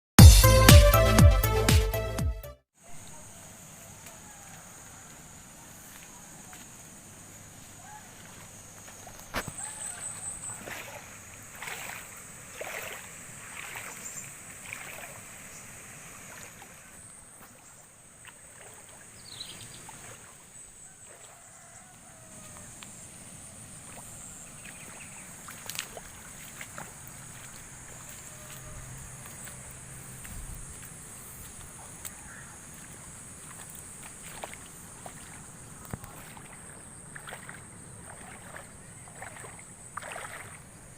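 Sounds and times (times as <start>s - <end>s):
water splashes: 7.7s - 40.9s
water flowing over dam: 10.5s - 16.9s, 34.2s - 40.6s.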